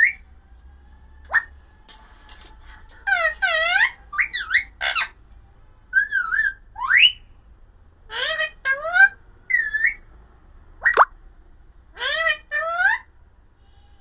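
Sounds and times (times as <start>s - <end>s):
parakeet squawking: 1.3s - 1.5s, 10.8s - 11.1s.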